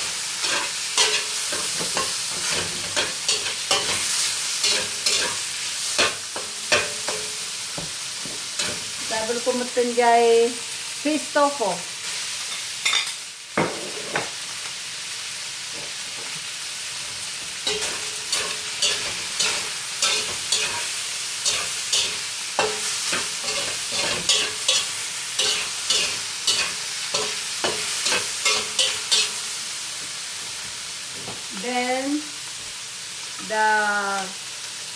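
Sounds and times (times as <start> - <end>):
chicken sizzling in hot oil: 0.0 - 34.9
spatula scraping and tapping pan: 0.4 - 5.4, 6.0 - 9.0, 17.4 - 29.4.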